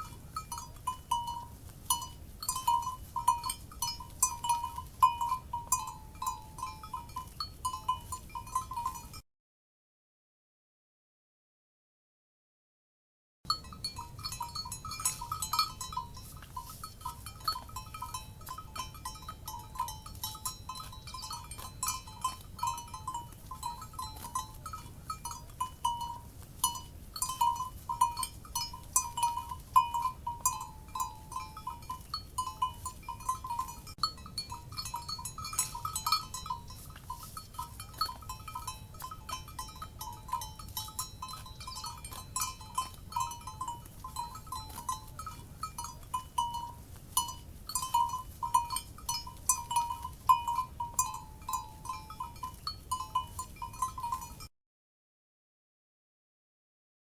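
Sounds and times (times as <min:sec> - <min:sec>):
low steady rumble: 0:00.0 - 0:09.1, 0:13.5 - 0:54.4
cowbells clanking: 0:00.0 - 0:09.2, 0:13.5 - 0:54.5.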